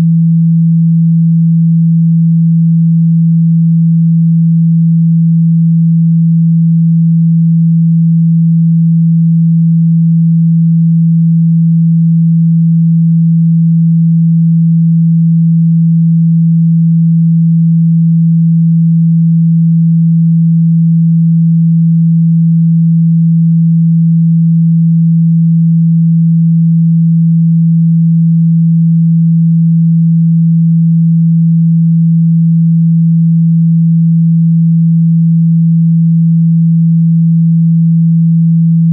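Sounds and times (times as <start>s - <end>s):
loud low pure tone: 0.0s - 0.6s, 30.6s - 38.9s.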